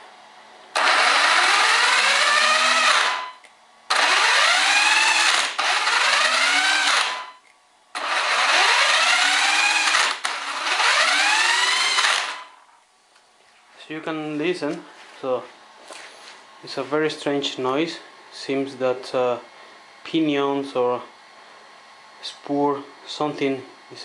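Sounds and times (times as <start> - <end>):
electric motor rising whine: 0.7 - 3.3, 3.9 - 7.4, 8.0 - 12.6
loud rasping gear noise: 0.8 - 3.3, 3.9 - 7.3, 8.0 - 12.5.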